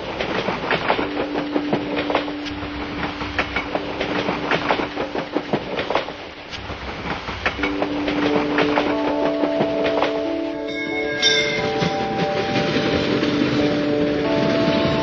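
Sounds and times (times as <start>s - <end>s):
train wheels clattering over rails: 0.0s - 15.0s
steady low tone: 0.8s - 15.0s.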